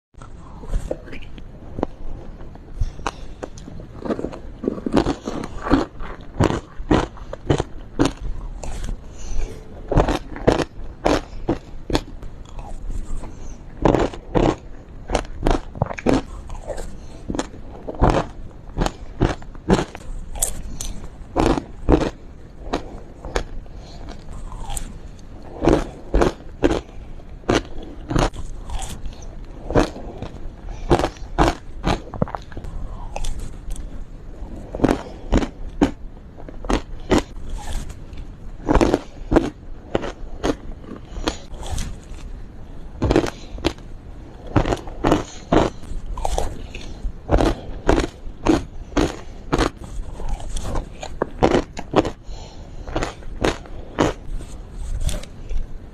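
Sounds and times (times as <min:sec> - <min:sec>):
chewing: 0:00.2 - 0:42.3, 0:43.0 - 0:43.8, 0:44.4 - 0:55.6
crunching frozen ice: 0:00.2 - 0:42.4, 0:43.0 - 0:55.7.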